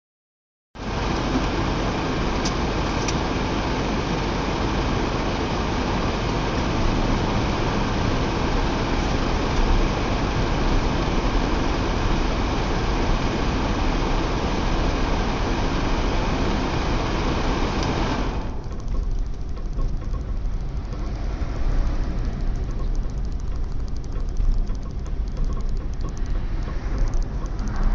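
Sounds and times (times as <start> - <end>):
pickup engine running: 0.8 - 27.9
faint ticks: 18.6 - 27.9.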